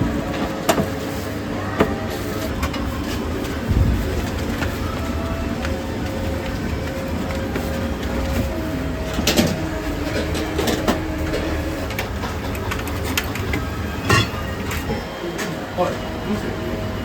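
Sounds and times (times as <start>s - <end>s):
bowls and utensils clinking: 10.1s - 15.0s.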